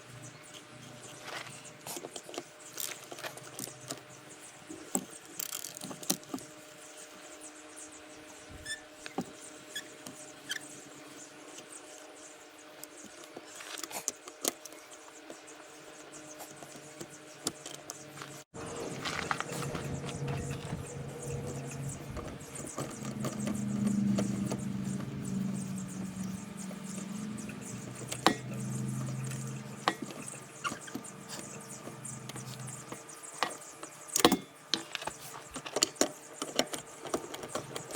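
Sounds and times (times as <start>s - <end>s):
faint steady hum: 14.7s - 37.9s.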